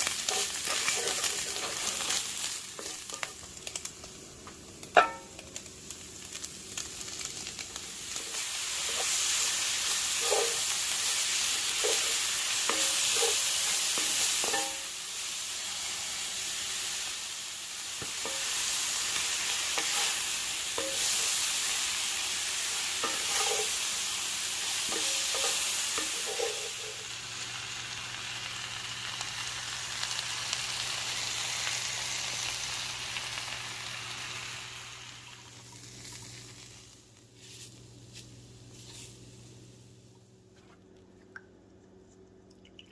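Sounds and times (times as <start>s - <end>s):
meat sizzling in hot oil: 0.0s - 40.1s
utensil knocking against pan: 5.0s - 5.2s
low steady hum: 35.2s - 42.9s.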